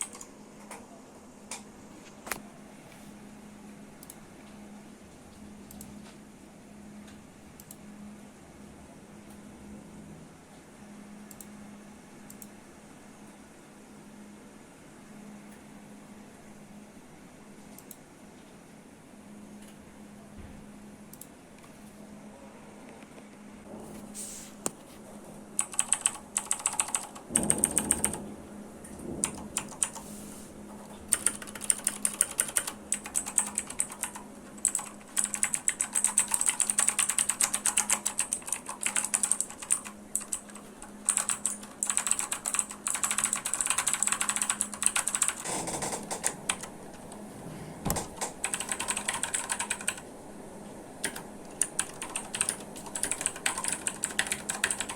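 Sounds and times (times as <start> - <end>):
mechanical keyboard clicking: 25.6 - 28.3, 29.2 - 30.1, 31.0 - 47.2, 47.9 - 50.0, 51.0 - 54.9.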